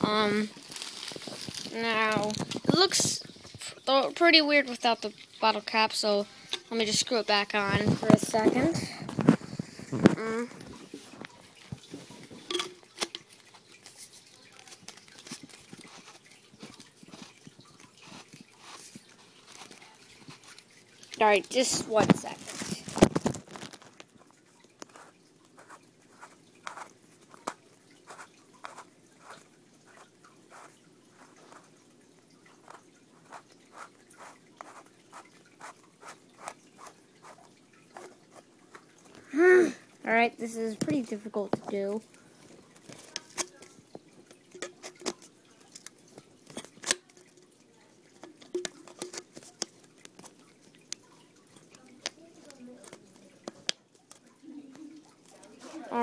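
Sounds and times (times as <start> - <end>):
plastic clicks and scrapes: 48.1 - 51.1.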